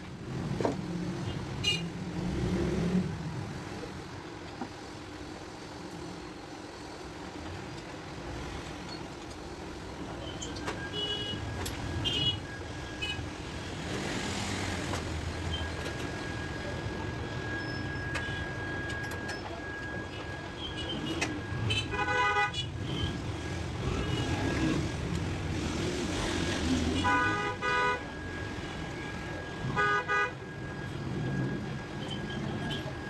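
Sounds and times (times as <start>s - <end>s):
street traffic rumble: 0.0s - 33.0s
horn honk: 20.8s - 23.2s, 26.6s - 28.2s, 29.7s - 30.5s.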